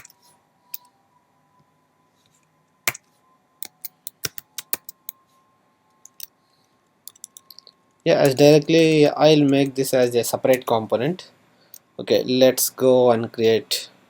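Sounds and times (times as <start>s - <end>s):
keyboard keystrokes: 3.6s - 5.2s.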